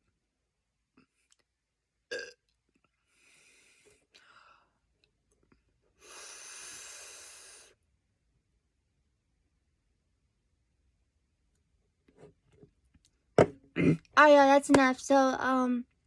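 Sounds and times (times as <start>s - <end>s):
man belching: 2.1s - 2.4s, 13.8s - 14.1s.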